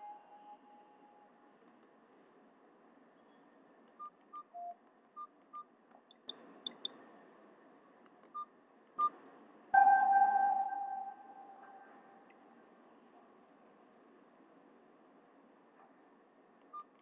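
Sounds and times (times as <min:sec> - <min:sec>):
phone keypad beeps: 0:04.0 - 0:05.7.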